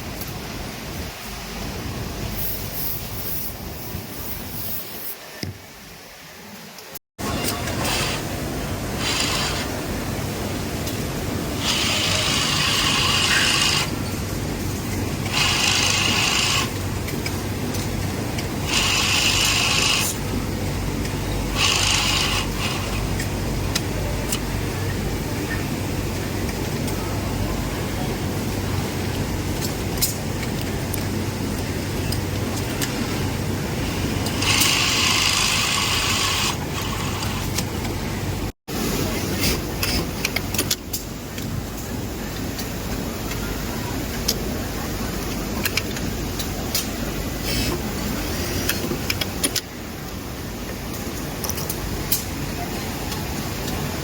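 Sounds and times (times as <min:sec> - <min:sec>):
sewing machine stitching: 0:07.4 - 0:08.3, 0:09.0 - 0:09.8, 0:11.6 - 0:14.0, 0:15.2 - 0:16.8, 0:18.6 - 0:20.2, 0:21.5 - 0:23.1, 0:33.9 - 0:37.6
sewing machine motor hum: 0:07.6 - 0:08.3, 0:08.9 - 0:09.8, 0:11.6 - 0:14.0, 0:15.2 - 0:16.8, 0:18.6 - 0:20.2, 0:21.4 - 0:23.1, 0:33.8 - 0:37.7.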